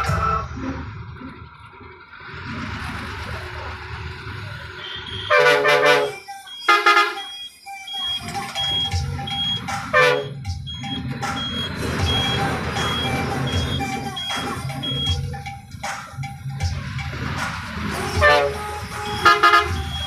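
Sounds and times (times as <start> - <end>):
large vehicle engine running: 0.0 - 20.0
horn blasts: 4.7 - 7.4, 8.1 - 10.5, 18.0 - 20.0
short high beep: 4.8 - 15.2.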